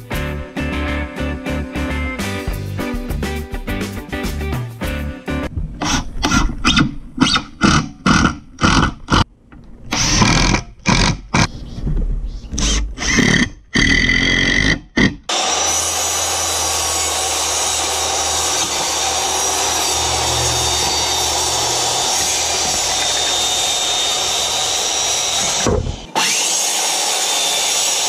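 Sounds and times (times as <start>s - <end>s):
power tool humming: 15.3s - 28.0s
hand tool scraping wood: 17.8s - 26.0s.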